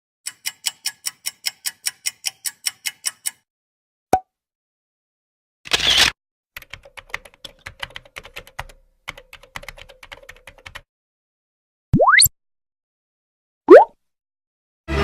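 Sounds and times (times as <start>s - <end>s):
keyboard typing: 6.6s - 10.8s.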